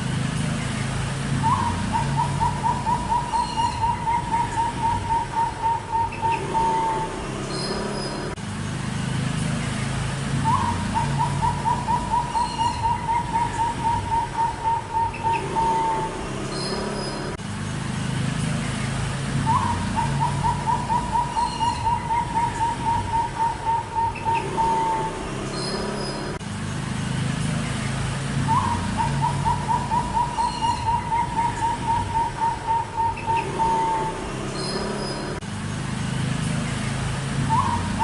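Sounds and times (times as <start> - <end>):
dove cooing: 1.4 - 7.1, 10.4 - 16.2, 19.4 - 25.2, 28.4 - 34.2, 37.5 - 38.0.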